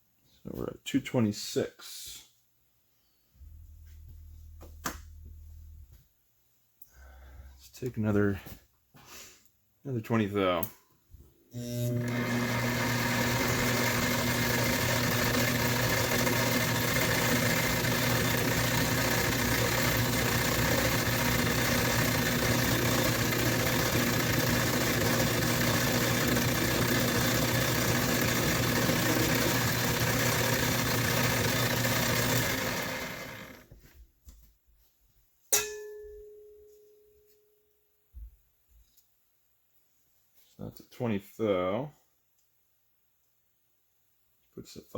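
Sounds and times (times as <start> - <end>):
metal lathe running: 11.6 - 33.6
metallic clink: 35.5 - 36.7.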